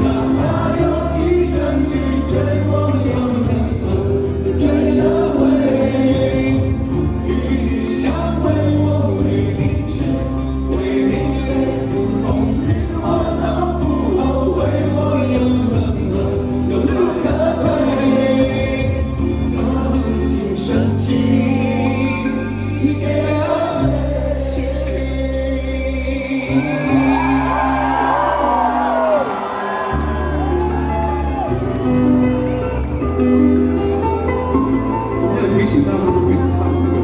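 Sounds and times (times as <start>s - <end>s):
voices singing together: 0.0s - 32.0s
live pop band: 0.0s - 37.0s.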